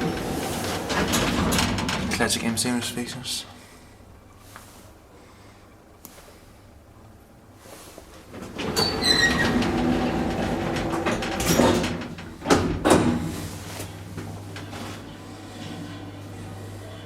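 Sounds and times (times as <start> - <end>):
elevator rumbling and squealing: 0.0 - 3.0, 8.3 - 17.0.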